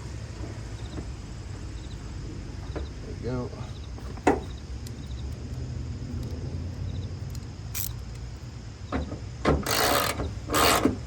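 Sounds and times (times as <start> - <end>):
low steady rumble: 0.0 - 11.0
hand tool rasping: 9.7 - 11.0.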